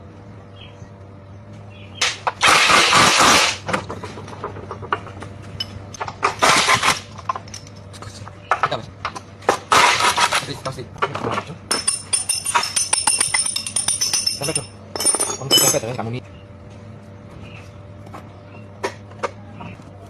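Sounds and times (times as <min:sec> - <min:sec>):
steady low hum: 0:00.0 - 0:20.0
tools knocking on metal: 0:11.7 - 0:15.8.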